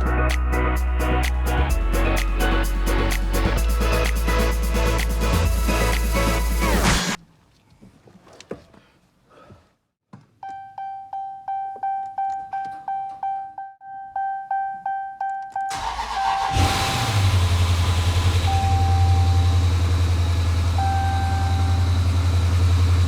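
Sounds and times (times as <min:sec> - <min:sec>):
dashboard warning chime: 0:10.4 - 0:16.6, 0:18.4 - 0:22.5
car engine cranking and starting: 0:15.7 - 0:23.0
car engine idling: 0:15.7 - 0:23.0.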